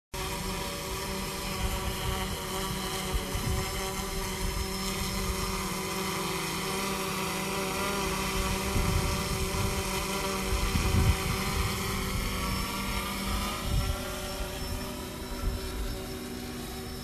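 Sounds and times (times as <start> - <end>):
drone propellers whining: 0.2 - 17.0.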